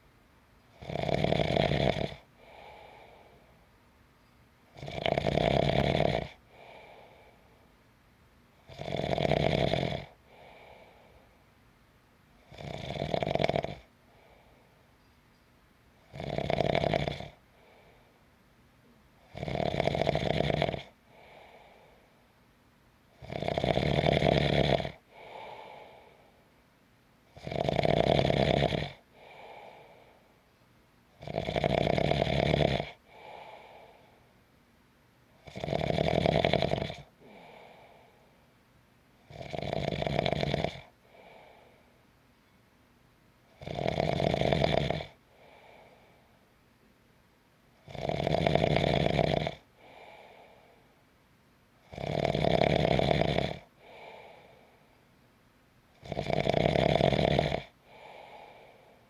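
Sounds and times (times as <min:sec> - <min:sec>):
person snoring: 0:00.8 - 0:03.2, 0:04.8 - 0:07.2, 0:08.7 - 0:11.0, 0:12.5 - 0:13.9, 0:16.1 - 0:17.4, 0:19.3 - 0:21.9, 0:23.2 - 0:26.2, 0:27.4 - 0:30.1, 0:31.2 - 0:34.1, 0:35.4 - 0:38.2, 0:39.3 - 0:41.7, 0:43.6 - 0:46.0, 0:47.9 - 0:50.6, 0:51.9 - 0:54.6, 0:56.0 - 0:58.9.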